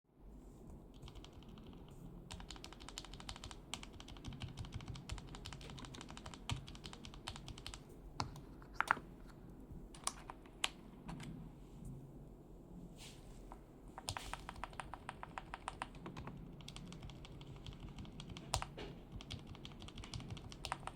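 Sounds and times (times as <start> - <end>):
mechanical keyboard typing: 0.9 - 9.0, 9.9 - 11.3, 14.0 - 20.9.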